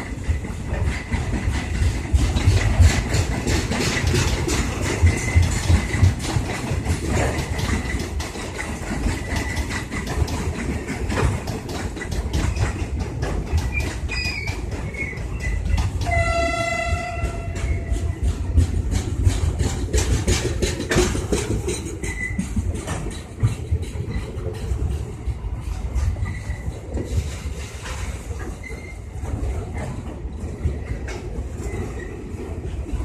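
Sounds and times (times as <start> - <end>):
diesel locomotive engines rumbling: 0.0 - 33.0
train wheels clicking over rail joints: 0.0 - 33.0
locomotive horn blast: 16.1 - 17.8.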